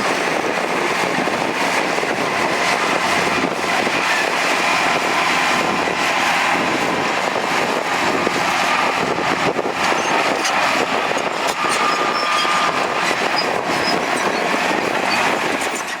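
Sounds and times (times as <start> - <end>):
diesel earthmoving machinery: 0.0 - 16.0
high-pitched squeaks: 9.8 - 16.0.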